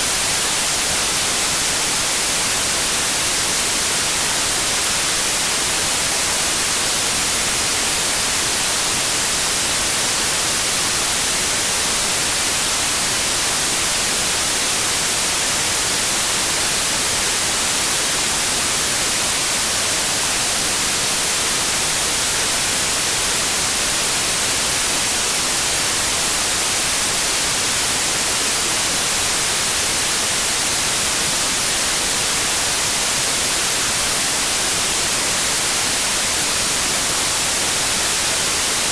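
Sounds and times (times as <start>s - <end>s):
white noise hiss: 0.0s - 38.9s.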